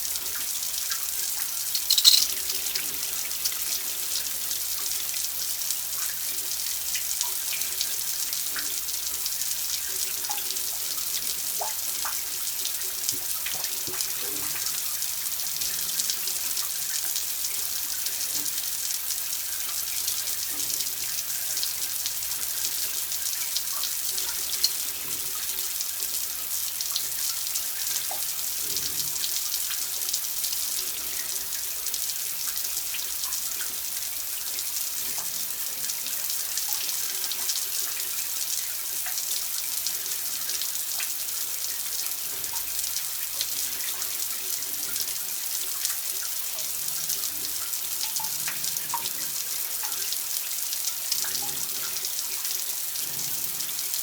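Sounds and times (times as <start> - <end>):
water running: 1.6 - 4.2
drips and splashes: 1.7 - 2.6.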